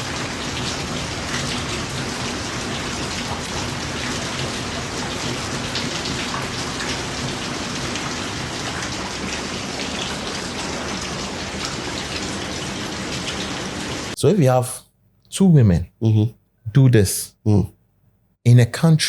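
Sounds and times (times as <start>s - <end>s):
heavy rain: 0.0s - 14.2s.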